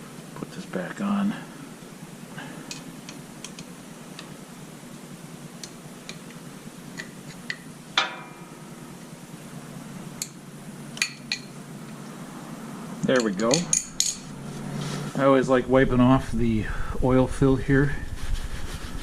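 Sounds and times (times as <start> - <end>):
metal clank ringing: 8.0 - 8.8
light metallic clicks and taps: 13.0 - 14.2.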